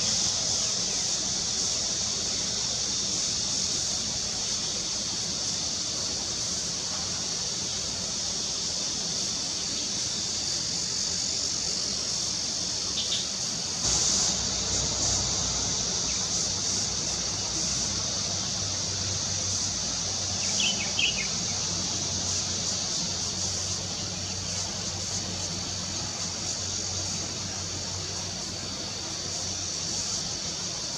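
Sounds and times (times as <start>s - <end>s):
high-pitched insect chorus: 0.0s - 30.9s
bird chirps: 20.4s - 21.6s.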